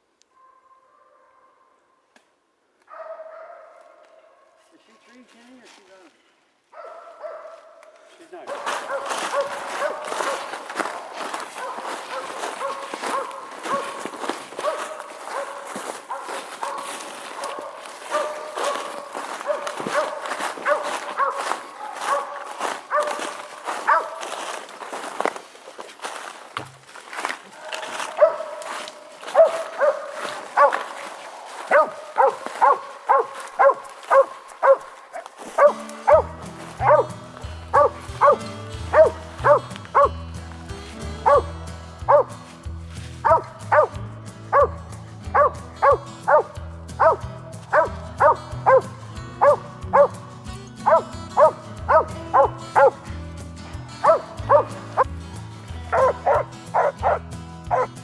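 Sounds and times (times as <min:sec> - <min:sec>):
dog barking: 0:00.3 - 0:02.0, 0:02.8 - 0:05.2, 0:06.7 - 0:25.4, 0:27.0 - 0:40.2, 0:41.2 - 0:41.5, 0:42.1 - 0:42.4, 0:43.2 - 0:53.1, 0:54.0 - 0:55.1, 0:55.9 - 0:57.9
background music: 0:08.4 - 0:25.3, 0:26.1 - 0:58.0.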